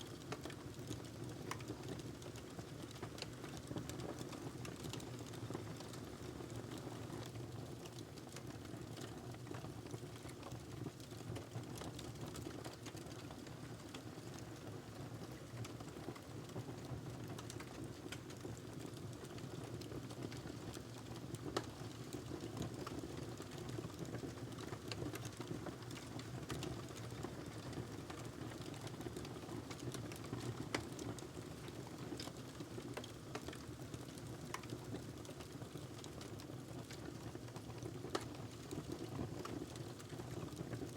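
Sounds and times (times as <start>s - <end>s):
low rumble of flames: 15.3s - 40.9s
fire crackling: 17.2s - 40.6s.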